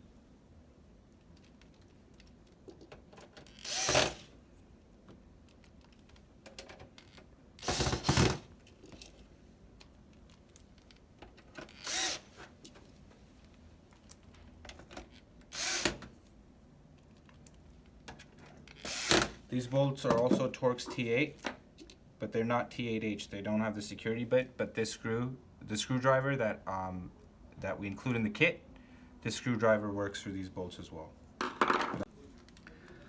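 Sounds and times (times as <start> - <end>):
screwdriver driving screws: 3.4 - 4.3, 7.6 - 8.5, 11.7 - 12.5, 15.5 - 16.1, 18.8 - 19.4.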